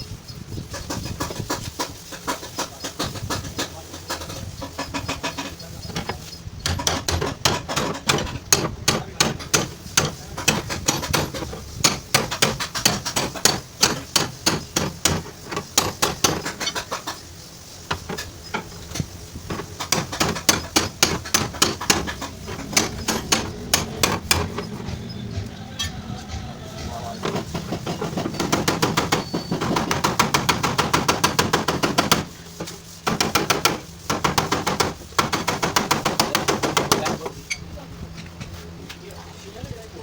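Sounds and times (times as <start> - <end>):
hammer striking sheet metal: 6.6 - 17.0, 19.5 - 32.4.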